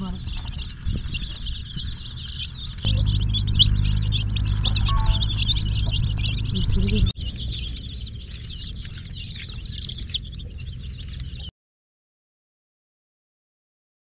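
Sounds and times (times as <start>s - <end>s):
baby chicks peeping: 0.0s - 11.5s
steady low hum: 2.8s - 11.3s.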